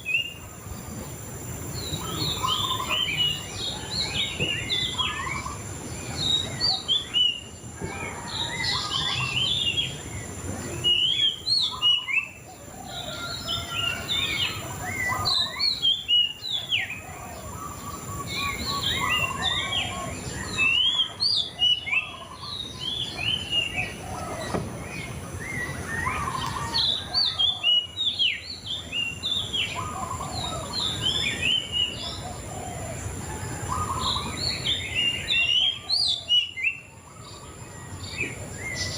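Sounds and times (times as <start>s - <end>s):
songbird singing: 0.0s - 38.9s.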